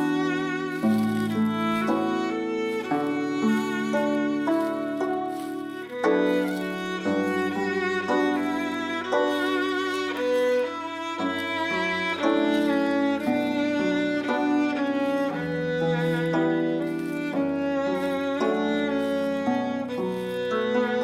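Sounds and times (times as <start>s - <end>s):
violin and cello music: 0.0s - 21.0s.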